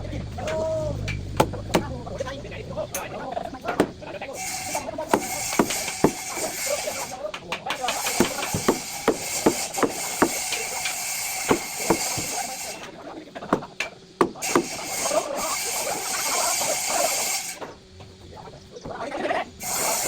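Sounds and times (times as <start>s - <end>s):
sharp knocks: 5.1s - 6.6s, 7.4s - 12.4s, 13.5s - 14.8s
scraping hiss: 19.6s - 20.0s.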